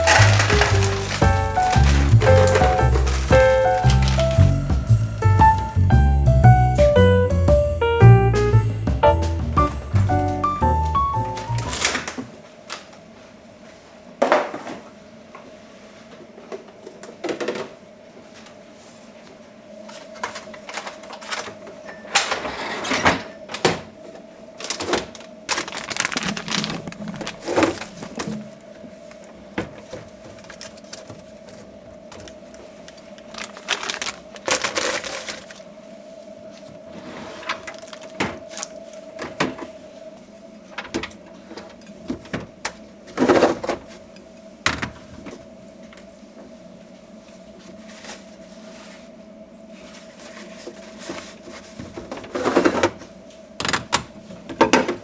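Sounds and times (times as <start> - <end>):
plastic containers being handled: 0.0 - 5.7, 24.6 - 28.6, 29.3 - 35.6
rustling: 0.0 - 6.0, 9.7 - 12.4, 24.6 - 42.0.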